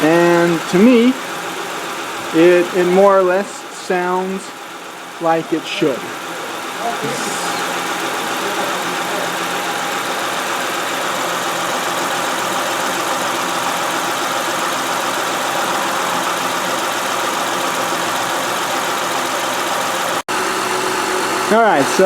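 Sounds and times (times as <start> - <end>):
car engine idling: 0.0 - 22.0.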